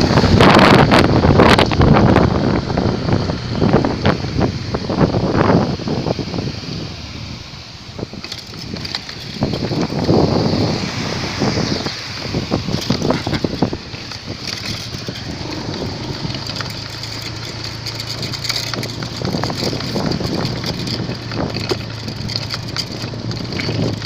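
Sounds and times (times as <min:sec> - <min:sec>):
constant noisy hiss: 0:00.0 - 0:24.0
motorcycle engine humming: 0:00.0 - 0:24.0.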